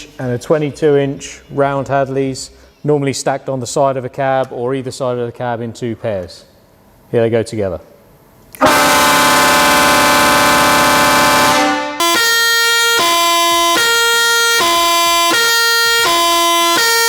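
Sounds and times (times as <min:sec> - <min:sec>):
two-tone air horn chord: 0:08.6 - 0:15.4
musical air horn tune: 0:08.6 - 0:17.0.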